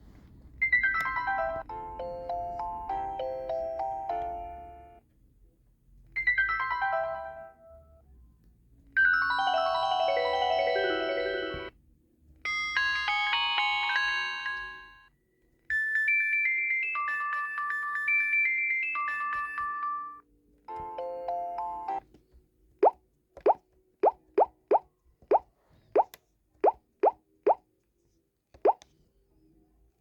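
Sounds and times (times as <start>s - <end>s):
electronic phone ringtones: 9.0s - 11.7s, 12.5s - 15.1s, 15.7s - 22.0s.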